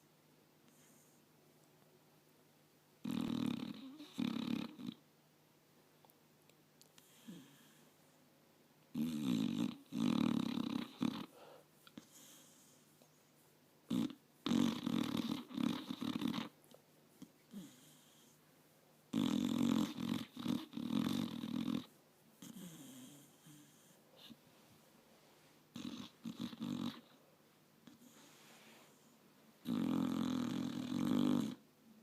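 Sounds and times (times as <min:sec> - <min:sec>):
dog snoring: 0:03.0 - 0:05.0, 0:07.0 - 0:07.8, 0:08.9 - 0:12.8, 0:13.9 - 0:16.6, 0:17.5 - 0:18.4, 0:19.1 - 0:24.4, 0:25.7 - 0:27.2, 0:27.8 - 0:31.6
dog breathing quietly: 0:10.4 - 0:13.4, 0:27.8 - 0:29.3.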